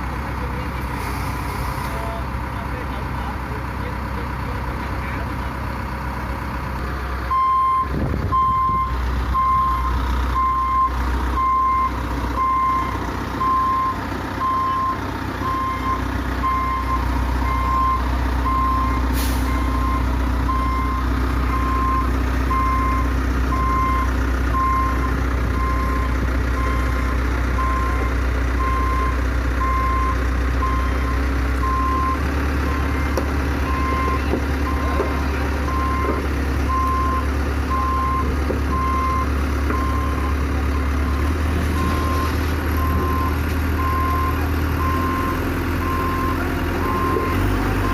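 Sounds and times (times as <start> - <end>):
diesel engine running: 0.0 - 47.9
reversing alarm beeping: 7.3 - 47.9
knocks and clunks: 32.7 - 39.0.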